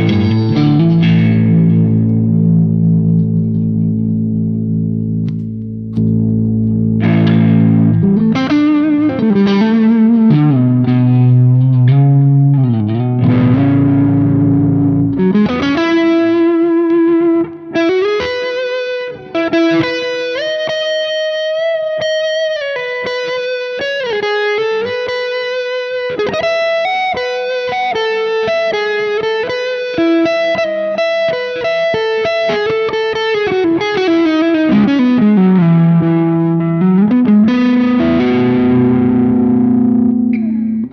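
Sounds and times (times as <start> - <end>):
electric guitar through an amp: 0.0 - 40.9.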